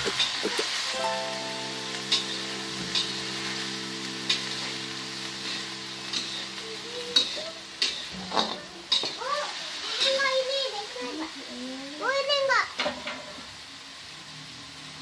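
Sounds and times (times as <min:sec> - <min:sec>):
food sizzling in a pan: 0:00.0 - 0:15.0
spatula scraping a pan: 0:07.2 - 0:09.4.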